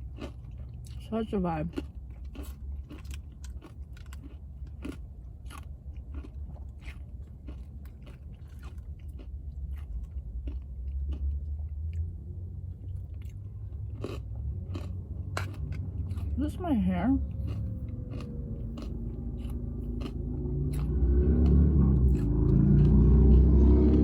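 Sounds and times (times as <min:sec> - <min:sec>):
close-up chewing crunches: 0:00.0 - 0:12.1, 0:12.7 - 0:24.0
steady low hum: 0:00.0 - 0:24.0.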